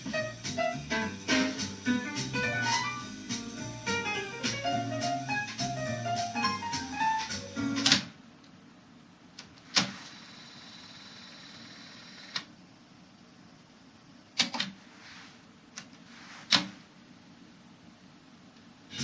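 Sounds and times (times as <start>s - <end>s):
steady tape hiss: 0.0s - 19.0s
cassette deck mechanism clicks: 7.8s - 8.1s.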